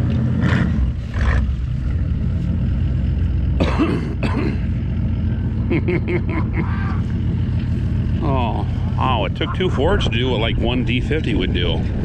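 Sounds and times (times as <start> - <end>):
truck engine idling: 0.0 - 12.0
voices: 8.1 - 11.9.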